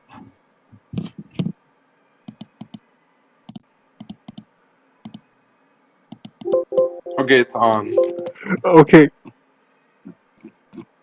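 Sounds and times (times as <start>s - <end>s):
button clicks: 6.4s - 8.4s.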